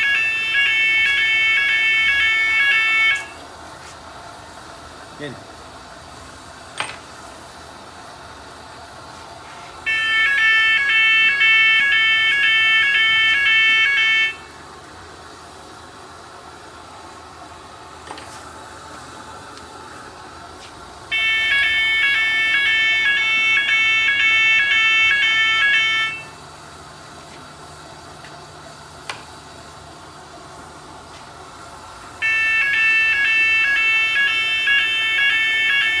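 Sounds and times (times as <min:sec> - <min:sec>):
pulsing electronic alarm: 0:00.0 - 0:03.4, 0:09.8 - 0:14.6, 0:21.1 - 0:26.6, 0:32.2 - 0:36.0.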